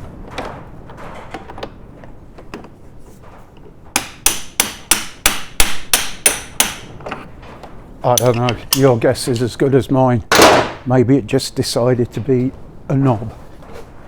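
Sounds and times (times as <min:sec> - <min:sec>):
hammer striking metal: 0:04.0 - 0:07.0, 0:08.1 - 0:09.0, 0:10.3 - 0:10.8
clicks of handled parts: 0:08.1 - 0:08.9.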